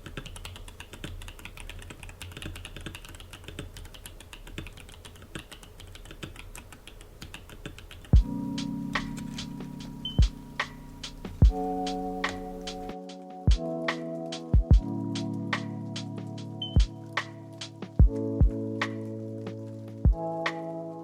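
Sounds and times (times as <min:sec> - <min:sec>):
music with loud hit and chord: 0:08.2 - 0:21.0.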